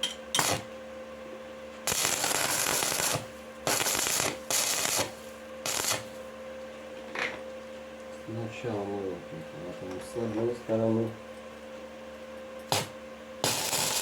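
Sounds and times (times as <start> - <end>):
welding machine hum: 0.0 - 0.8, 1.7 - 6.3, 12.6 - 14.0
welding arc crackling: 0.4 - 0.6, 1.8 - 6.1, 12.7 - 14.0.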